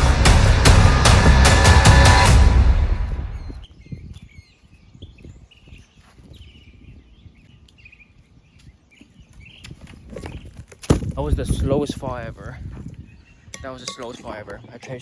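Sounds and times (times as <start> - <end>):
low thumps and rumble: 0.0 - 3.6
birds chirping: 3.0 - 15.0.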